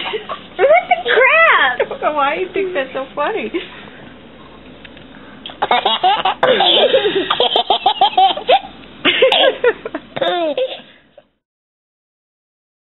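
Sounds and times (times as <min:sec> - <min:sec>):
baby laughing: 0:05.5 - 0:09.5, 0:10.2 - 0:10.9.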